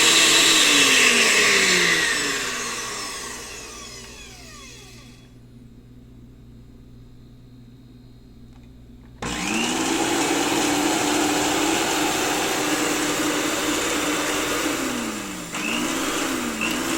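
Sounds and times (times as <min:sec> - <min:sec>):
blender motor running: 0:00.0 - 0:05.3, 0:09.2 - 0:16.9.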